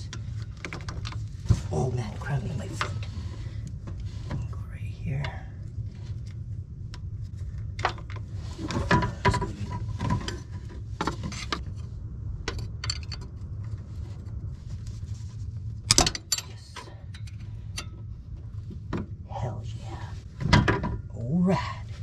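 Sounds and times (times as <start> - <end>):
steady low hum: 0.0 - 22.0
tools and metal parts knocking: 12.5 - 13.3.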